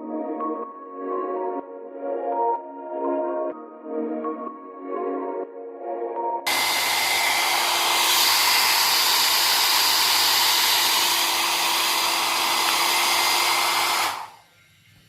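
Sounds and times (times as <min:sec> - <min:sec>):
hair dryer running: 0:06.5 - 0:14.4.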